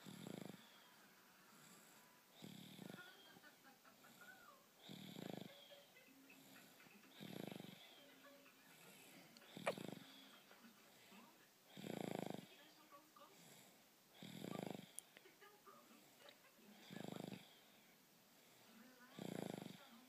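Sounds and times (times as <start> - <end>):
baby snoring softly: 0.0 - 3.4, 4.1 - 12.6, 13.4 - 15.2, 16.7 - 17.9, 19.0 - 20.0.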